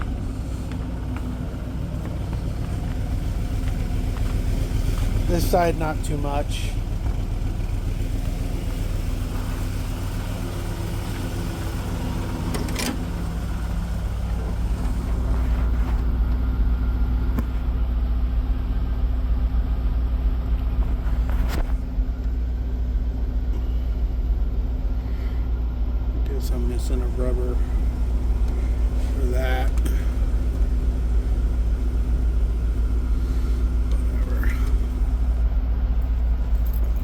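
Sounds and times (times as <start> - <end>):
truck engine idling: 0.0 - 37.0.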